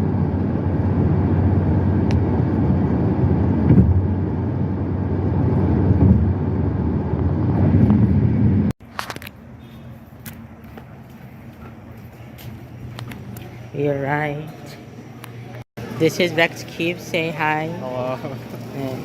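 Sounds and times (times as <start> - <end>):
car road noise rumble: 0.0 - 13.8.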